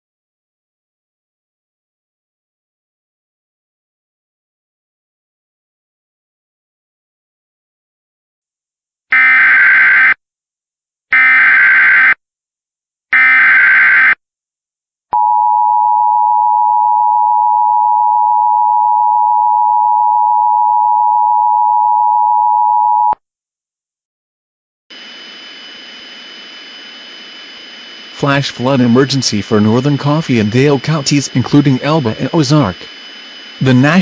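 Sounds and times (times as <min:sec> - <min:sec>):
warbling data tones: 0:24.9 - 0:34.0.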